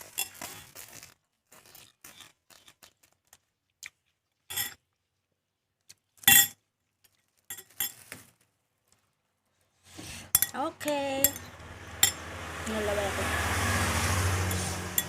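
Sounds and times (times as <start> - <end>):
utensils clinking against dishes: 10.2 - 10.6, 11.2 - 12.3.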